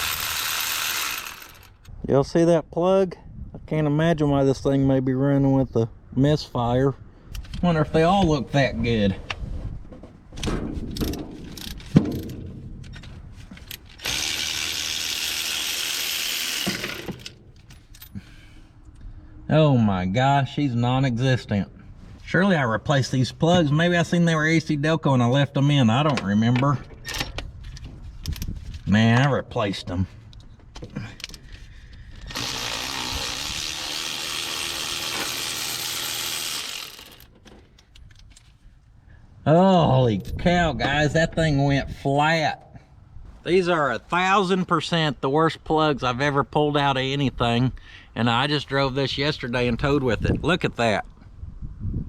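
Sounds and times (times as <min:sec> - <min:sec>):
power ratchet running: 0:00.0 - 0:01.8, 0:14.0 - 0:17.4, 0:32.3 - 0:37.3.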